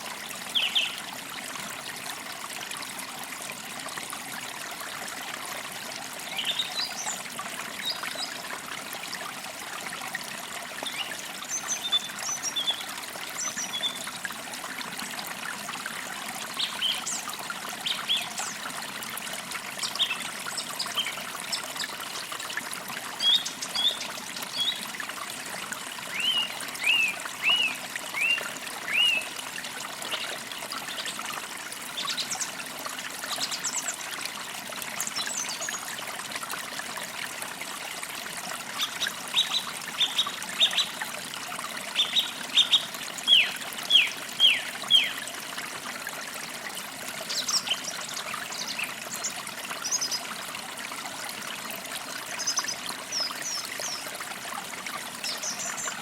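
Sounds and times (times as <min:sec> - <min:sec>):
creek trickling and babbling: 0:00.0 - 0:56.0
songbirds calling: 0:00.5 - 0:01.0, 0:06.2 - 0:07.2, 0:10.8 - 0:14.1, 0:16.5 - 0:18.6, 0:23.2 - 0:24.8, 0:26.0 - 0:29.4, 0:38.8 - 0:41.0, 0:42.0 - 0:45.2, 0:47.3 - 0:50.3, 0:55.2 - 0:56.0.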